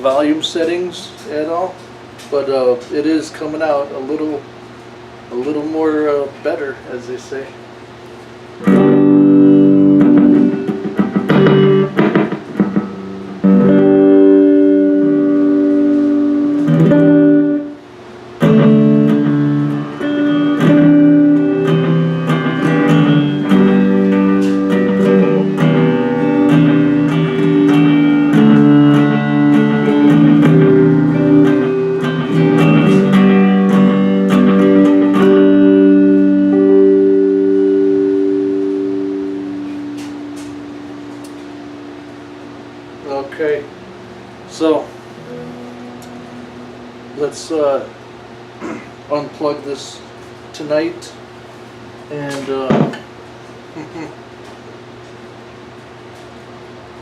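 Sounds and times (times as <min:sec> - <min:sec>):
electric guitar through amp: 0:08.6 - 0:17.8, 0:18.4 - 0:48.8.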